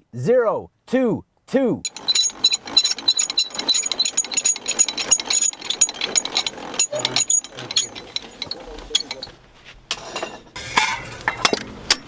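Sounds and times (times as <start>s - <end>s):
metallic ratcheting clicks: 1.8s - 9.3s.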